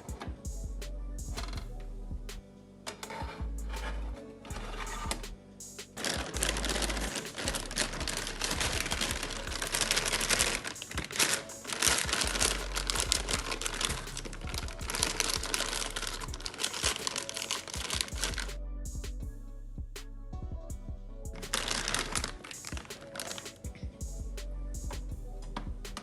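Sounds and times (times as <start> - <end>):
background music: 0.0 - 26.0
crinkling and rustling: 2.8 - 5.2, 5.9 - 18.5, 21.4 - 23.8.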